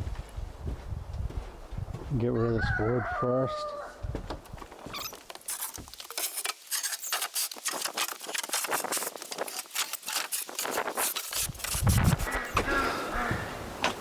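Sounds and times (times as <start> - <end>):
wood pieces clattering: 4.4 - 12.7.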